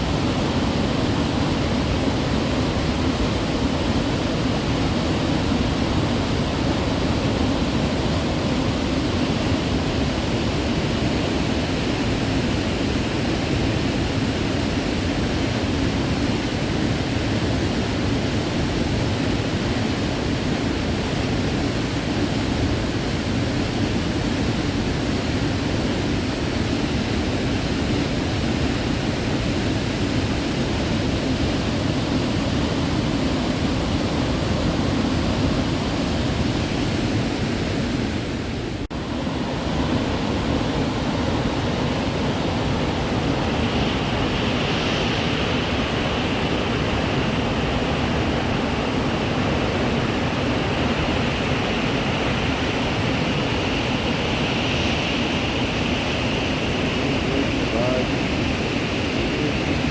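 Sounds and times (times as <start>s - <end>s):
waterfall rushing: 38.9s - 59.9s.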